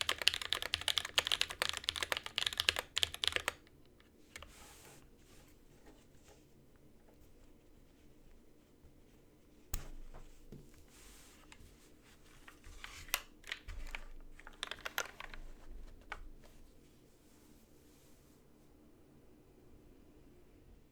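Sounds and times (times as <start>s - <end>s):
mechanical keyboard typing: 0.0s - 3.7s, 12.8s - 16.2s.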